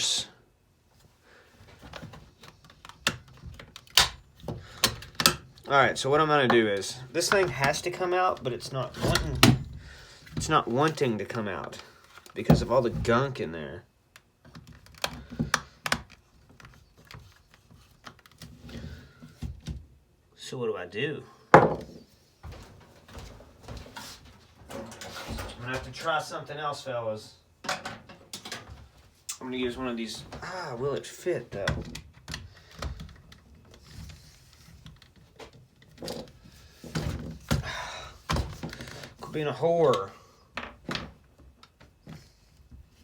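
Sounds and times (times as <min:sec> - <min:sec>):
knocks: 0:21.6 - 0:22.0.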